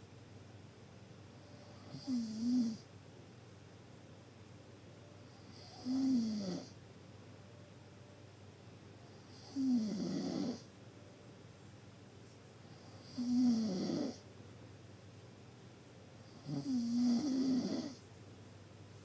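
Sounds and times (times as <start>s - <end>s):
deep snoring: 5.5s - 6.8s, 9.3s - 10.7s, 12.9s - 14.2s, 16.3s - 18.0s.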